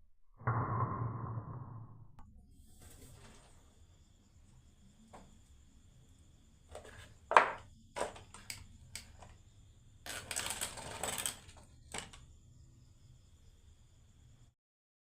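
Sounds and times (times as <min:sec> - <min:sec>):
marbles rolling down wooden run: 0:10.1 - 0:12.2.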